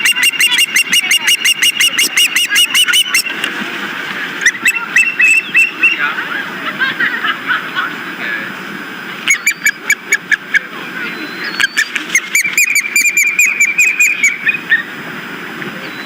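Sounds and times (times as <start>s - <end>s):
osprey whistled calls: 0.0s - 3.4s, 4.4s - 6.4s, 9.2s - 15.0s, 15.8s - 16.0s.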